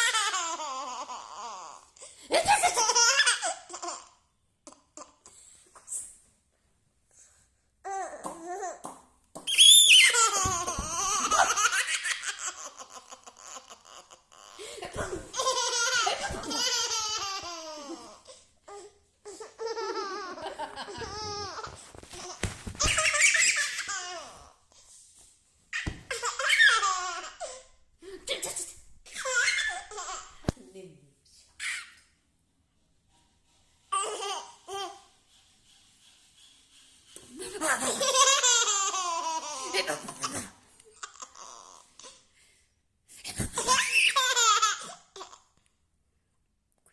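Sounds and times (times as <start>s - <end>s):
baby giggling: 0.0s - 4.1s, 9.9s - 18.4s, 19.5s - 24.5s, 25.8s - 27.6s, 37.6s - 42.1s, 43.5s - 45.4s.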